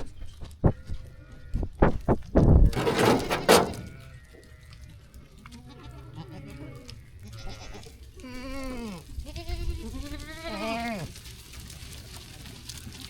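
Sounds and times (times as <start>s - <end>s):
rustling and knocking: 2.1s - 4.0s
sheep bleating: 2.8s - 11.2s.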